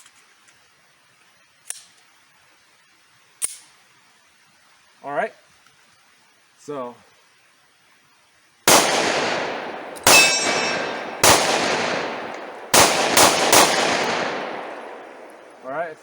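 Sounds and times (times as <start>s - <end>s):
pistol shots echoing: 8.7s - 15.6s.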